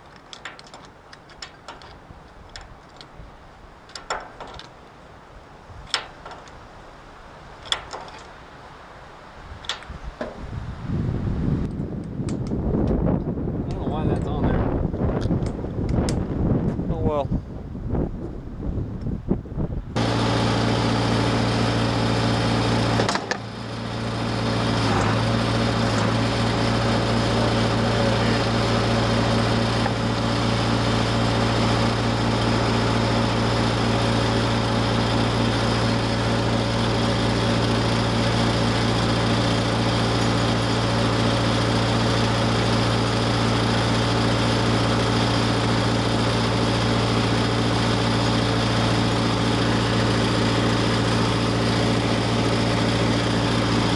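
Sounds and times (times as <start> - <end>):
backhoe engine running: 20.0 - 53.9.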